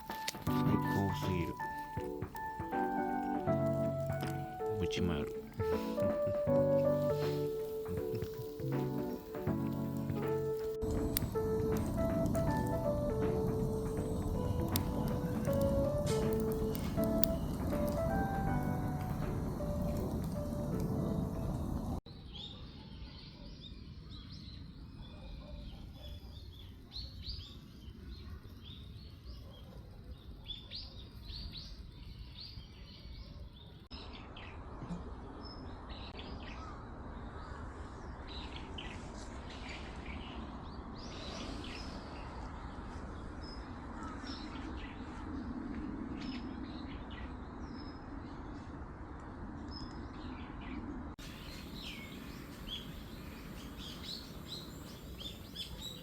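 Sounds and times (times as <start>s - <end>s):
steady background hush: 0.0s - 22.0s
small birds chirping: 0.0s - 45.4s, 49.7s - 56.0s.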